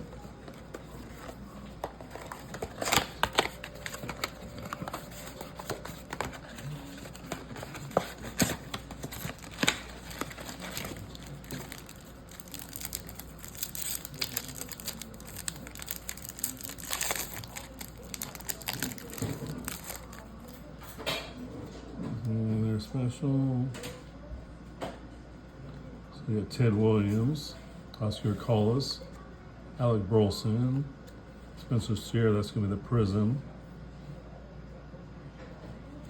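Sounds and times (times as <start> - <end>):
card packs ripping open: 1.9 - 20.3
wrappers crinkling: 1.9 - 20.5.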